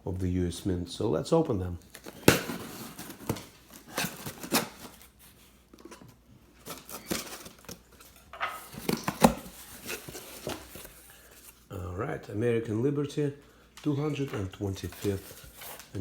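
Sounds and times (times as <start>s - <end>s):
tape tearing: 1.8s - 6.0s, 6.6s - 11.6s, 14.8s - 16.0s
packaging rustling: 1.8s - 11.7s, 14.1s - 16.0s.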